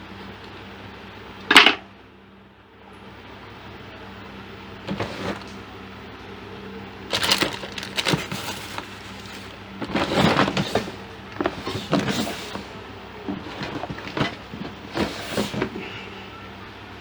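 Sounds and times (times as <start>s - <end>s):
objects clattering and scraping: 4.8s - 5.7s, 7.1s - 16.0s.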